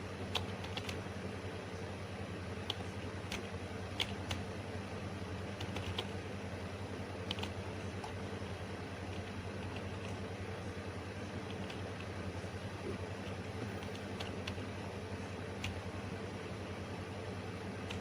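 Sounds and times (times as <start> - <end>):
steady low hum: 0.0 - 18.0
computer keyboard typing clicks: 0.3 - 1.0, 2.6 - 4.4, 5.6 - 6.2, 7.3 - 8.2, 9.1 - 10.2, 11.4 - 12.2, 13.2 - 14.6, 15.6 - 15.8.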